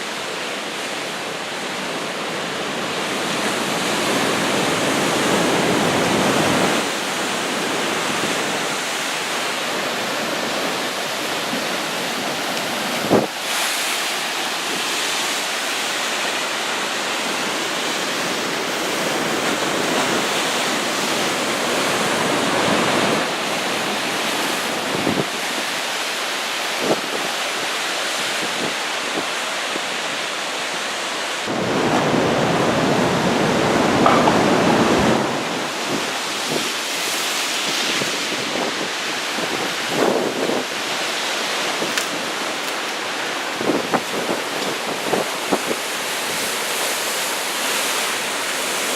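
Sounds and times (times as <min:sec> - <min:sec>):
heavy surf breaking on beach: 0:00.0 - 0:48.9
wind on microphone: 0:03.2 - 0:13.8, 0:18.1 - 0:25.8, 0:31.4 - 0:47.0.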